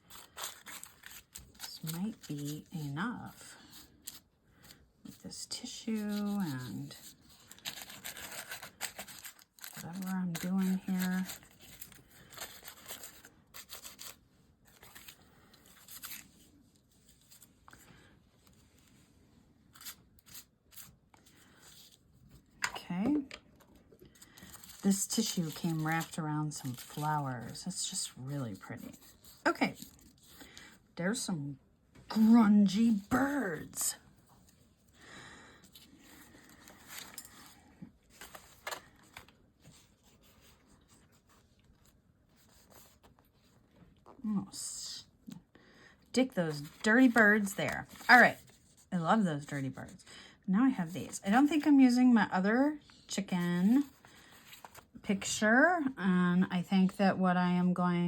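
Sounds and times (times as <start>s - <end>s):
crisp clicks and scrapes: 0.0s - 4.2s, 6.0s - 16.4s
tissue paper rustling and crinkling: 6.0s - 17.5s, 24.2s - 30.4s, 35.8s - 43.5s.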